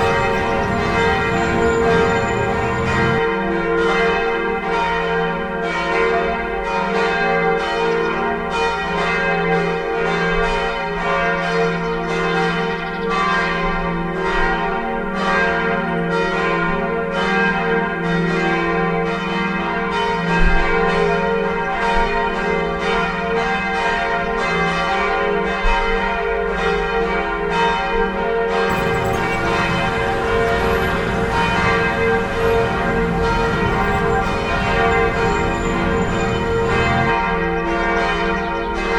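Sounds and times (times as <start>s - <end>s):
church bells ringing: 0.0s - 3.2s, 28.7s - 37.2s
low rumbling noise: 0.0s - 3.2s, 28.7s - 37.1s.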